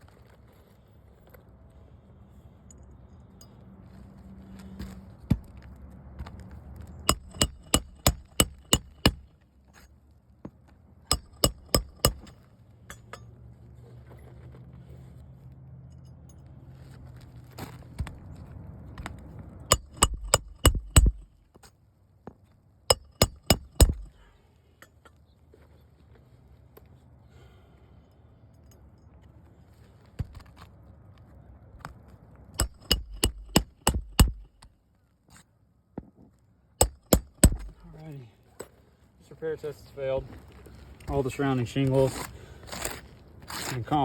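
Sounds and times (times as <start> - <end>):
hammer driving nails into shingles: 7.1 - 9.3, 11.1 - 12.4, 19.7 - 21.3, 22.9 - 24.2, 32.6 - 34.7, 36.8 - 37.8.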